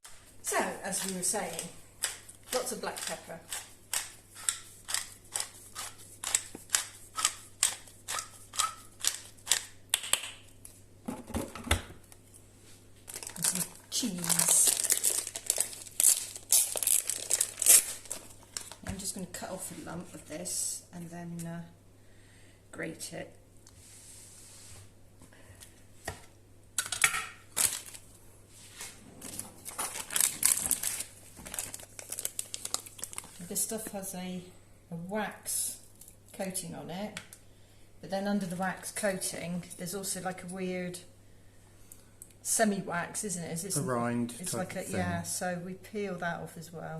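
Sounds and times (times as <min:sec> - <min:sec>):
pepper mill grinding: 0:00.8 - 0:09.7, 0:13.1 - 0:18.3.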